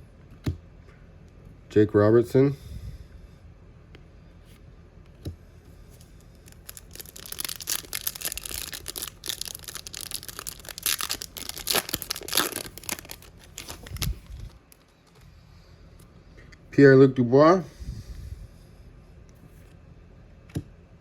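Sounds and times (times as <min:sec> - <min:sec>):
card pack wrapper tearing: 0:06.4 - 0:14.9.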